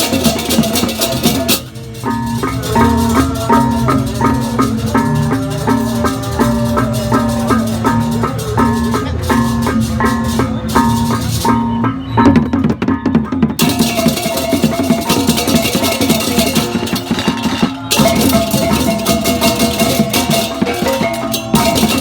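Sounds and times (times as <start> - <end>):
drums: 0.0 - 22.0
crashing cymbals: 13.6 - 22.0.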